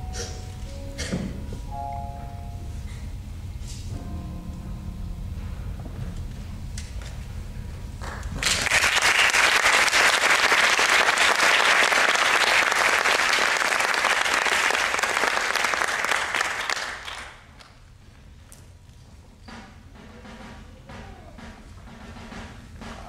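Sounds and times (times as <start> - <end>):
audience applauding: 8.0 - 17.7.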